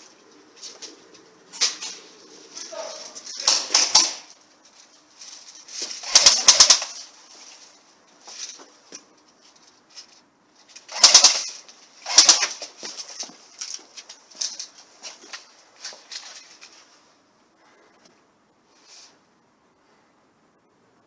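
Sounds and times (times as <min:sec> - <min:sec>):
airsoft gun firing rapid clicks: 0:03.4 - 0:04.3, 0:06.0 - 0:07.0, 0:10.9 - 0:12.7.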